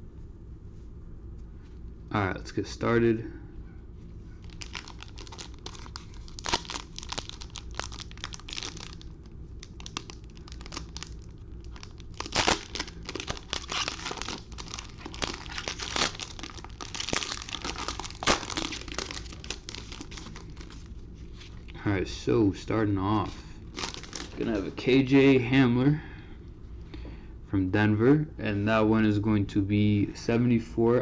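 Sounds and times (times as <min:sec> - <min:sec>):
plastic wrapping torn and crinkled: 0:04.4 - 0:21.8, 0:23.7 - 0:24.7.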